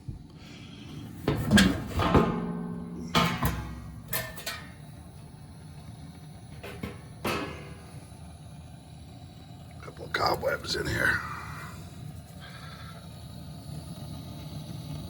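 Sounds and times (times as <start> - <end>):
metal panel ringing: 0.8 - 5.3, 6.6 - 8.2
metal panel clanks and knocks: 0.9 - 5.1, 6.5 - 8.1.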